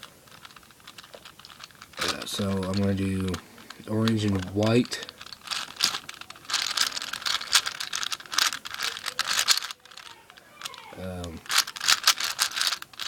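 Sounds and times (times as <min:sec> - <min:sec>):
puzzle cube clicking and rattling: 0:00.0 - 0:13.0.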